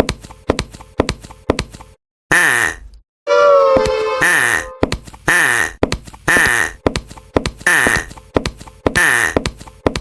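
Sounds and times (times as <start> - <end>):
cartoon held tone: 3.3 - 4.9.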